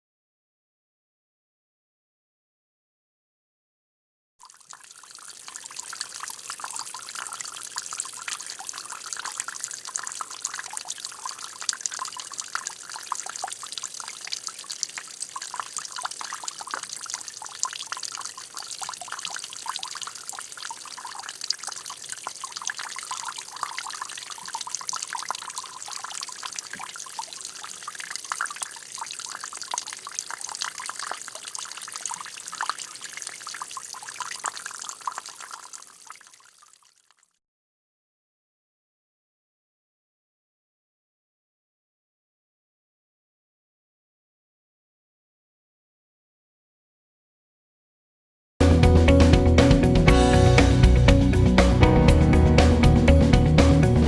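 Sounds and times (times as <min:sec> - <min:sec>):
water trickling and splashing: 0:04.4 - 0:37.3.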